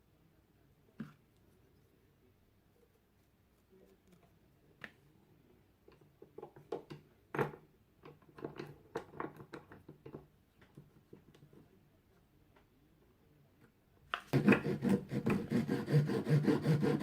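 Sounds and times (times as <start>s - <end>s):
clicks and taps of tools: 5.9s - 11.5s.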